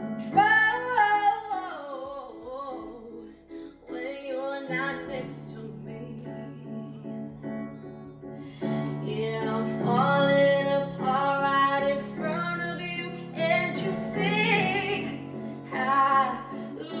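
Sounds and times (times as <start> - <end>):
woman singing wordless notes: 3.8 - 17.0.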